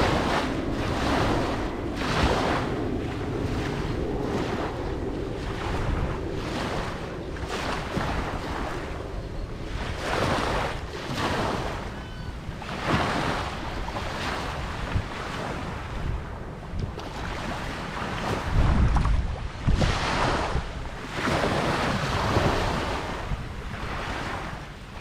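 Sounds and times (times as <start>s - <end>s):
waves breaking: 0.0s - 25.0s.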